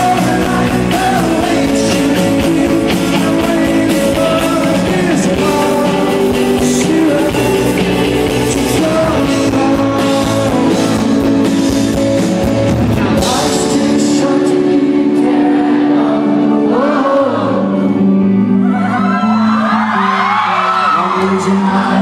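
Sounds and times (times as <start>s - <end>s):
drums and cymbals: 0.0s - 14.2s
lead vocal singing: 0.0s - 22.0s
rock band playing live: 0.0s - 22.0s.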